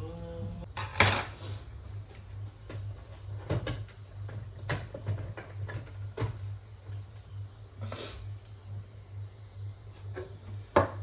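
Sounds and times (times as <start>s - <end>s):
low pulsing hum: 0.0s - 0.8s.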